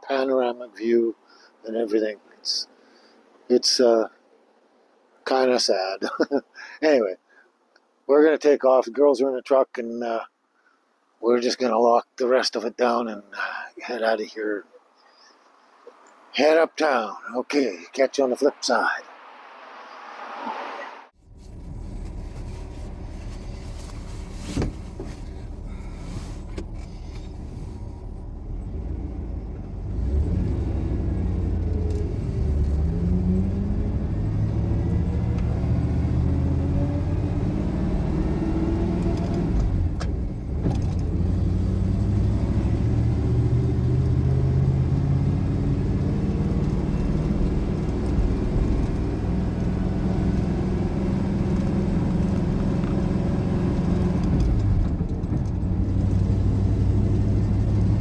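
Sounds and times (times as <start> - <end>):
truck engine accelerating: 21.2 - 58.0.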